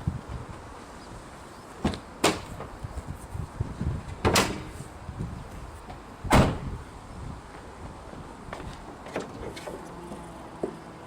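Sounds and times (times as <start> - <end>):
car bodywork clunks: 1.8 - 2.8, 4.1 - 4.8, 5.9 - 6.7.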